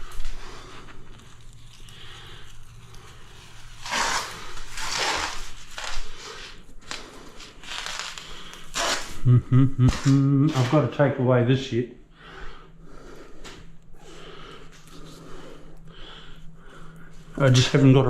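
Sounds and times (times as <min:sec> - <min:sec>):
scraping and rubbing: 0:00.0 - 0:09.2
person speaking: 0:09.3 - 0:12.0, 0:17.4 - 0:18.0.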